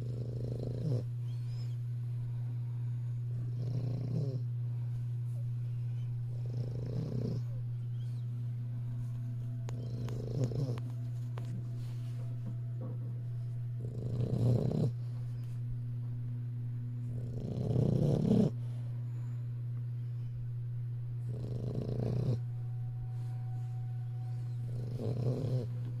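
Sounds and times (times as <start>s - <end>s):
puppy snoring: 0.0s - 1.8s, 3.2s - 4.6s, 5.8s - 8.2s, 9.7s - 12.0s, 13.8s - 15.5s, 17.0s - 18.7s, 21.2s - 22.5s, 24.5s - 25.8s
steady low hum: 0.0s - 26.0s.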